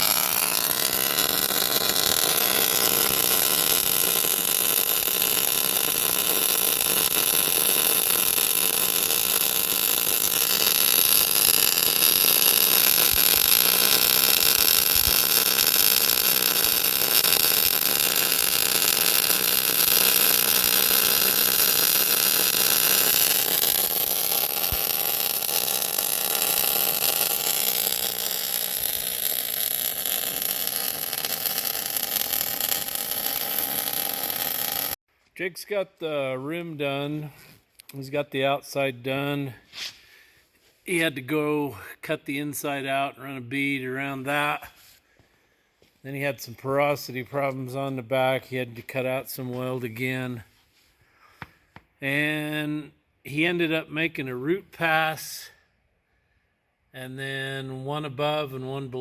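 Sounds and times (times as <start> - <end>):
plasma cutter hissing: 0.0 - 35.0.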